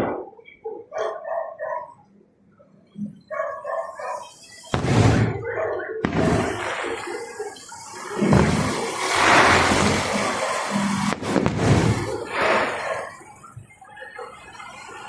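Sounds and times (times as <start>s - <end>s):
dog barking: 0.4s - 2.1s, 3.2s - 4.4s, 5.3s - 7.7s, 12.2s - 13.2s
firework bangs: 3.8s - 13.8s.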